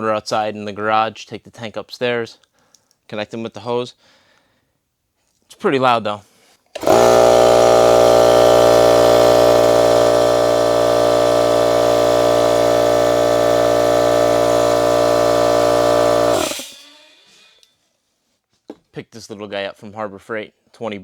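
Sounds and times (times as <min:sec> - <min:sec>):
air compressor motor hum: 0:06.8 - 0:17.1.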